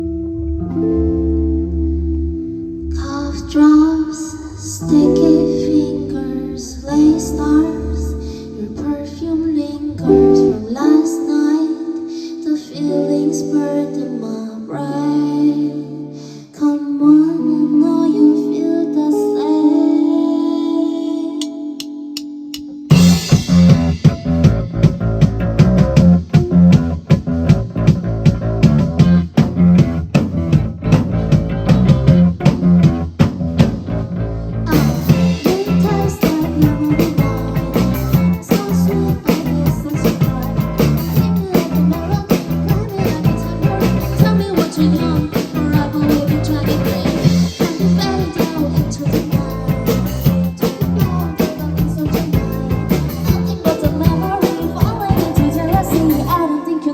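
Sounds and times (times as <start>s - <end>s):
rock band playing: 0.0s - 3.8s, 4.8s - 11.4s, 22.2s - 56.5s.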